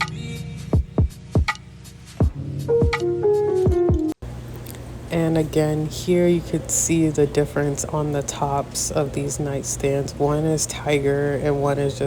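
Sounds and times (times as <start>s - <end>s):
deep drum hits: 2.2s - 3.0s
held keyboard notes: 2.2s - 4.2s.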